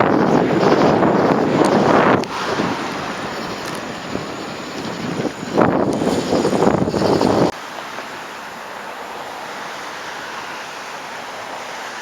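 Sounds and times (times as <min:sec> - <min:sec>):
wind buffeting microphone: 0:00.0 - 0:08.2
steady hiss: 0:00.0 - 0:12.0.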